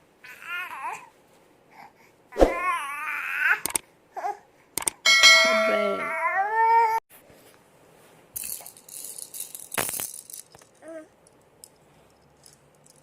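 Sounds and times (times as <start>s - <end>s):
baby crying: 0.2s - 1.1s, 2.5s - 3.6s, 5.9s - 7.0s
baby rattle shaken: 8.4s - 13.0s.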